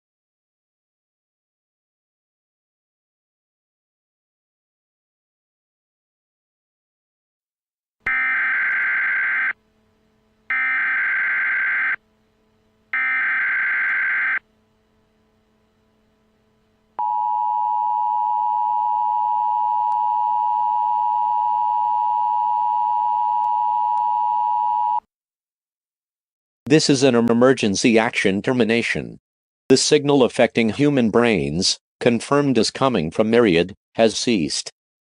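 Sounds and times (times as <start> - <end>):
two-tone attention signal: 8.1 - 9.6
shrill digital data screech: 13.0 - 14.4.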